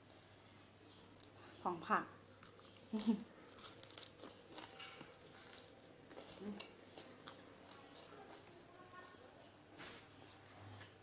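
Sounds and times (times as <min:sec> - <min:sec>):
crunching raw vegetables: 0:02.3 - 0:09.2.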